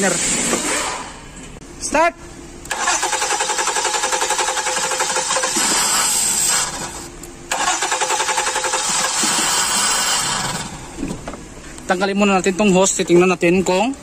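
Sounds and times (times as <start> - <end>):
starter motor cranking engine: 2.7 - 10.9.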